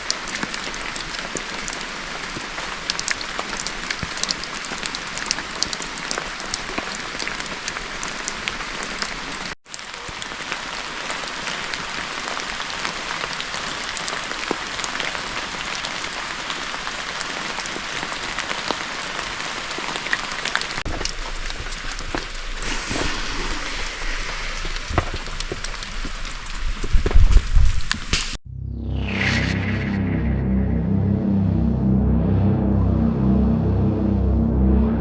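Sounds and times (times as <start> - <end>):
rain pattering: 0.0 - 28.4.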